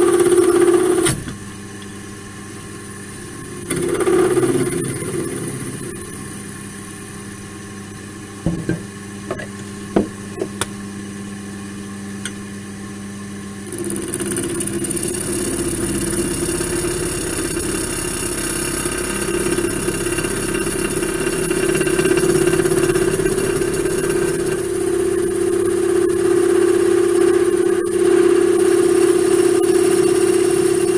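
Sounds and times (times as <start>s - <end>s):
wood lathe motor hum: 3.1s - 7.2s, 13.6s - 30.9s
chisel cutting spinning wood: 3.3s - 6.6s, 13.6s - 26.1s.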